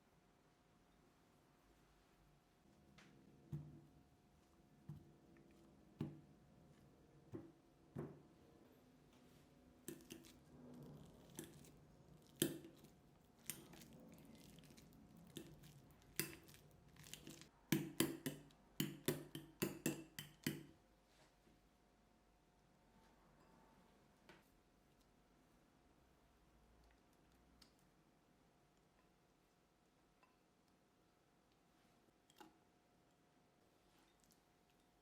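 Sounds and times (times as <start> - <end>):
utensil tapping a mixing bowl: 17.7 - 20.8.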